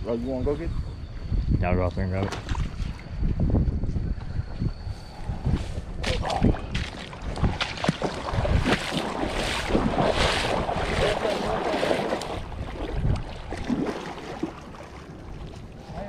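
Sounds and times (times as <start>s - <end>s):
water splashing and sloshing: 2.2s - 3.4s, 5.6s - 16.0s.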